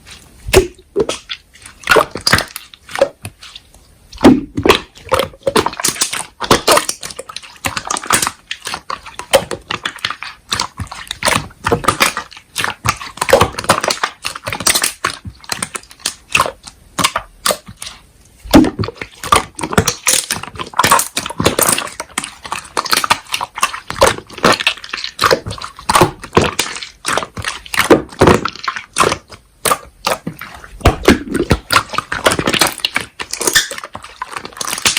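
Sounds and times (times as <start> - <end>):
slime squeezed by hand: 0.0 - 34.9.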